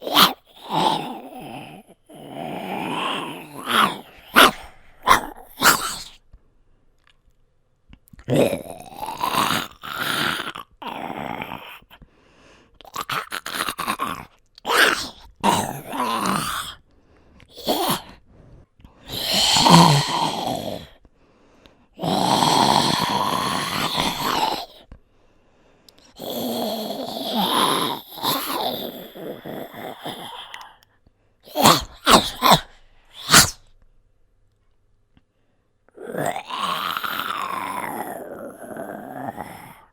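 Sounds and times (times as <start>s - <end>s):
person growling and groaning: 0.0s - 6.2s, 8.2s - 12.0s, 12.9s - 16.8s, 17.5s - 18.4s, 19.0s - 21.0s, 22.0s - 24.9s, 26.1s - 30.8s, 31.5s - 33.6s, 35.9s - 39.9s.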